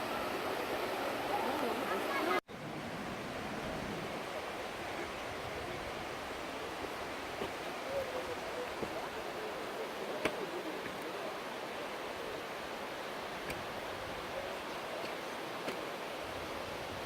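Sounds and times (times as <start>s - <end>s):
mountain stream rushing: 0.0s - 17.0s
faint distant voices: 3.9s - 16.0s.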